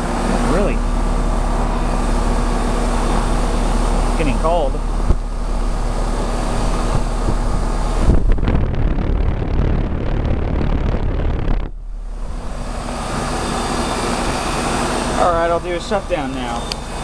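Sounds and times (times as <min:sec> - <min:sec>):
compressor hum: 0:00.0 - 0:17.0
fan rushing: 0:00.0 - 0:17.0
wind buffeting microphone: 0:04.8 - 0:14.9.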